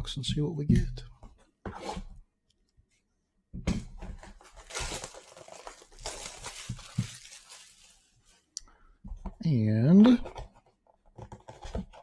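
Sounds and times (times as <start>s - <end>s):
packaging crinkling and tearing: 4.2s - 8.2s.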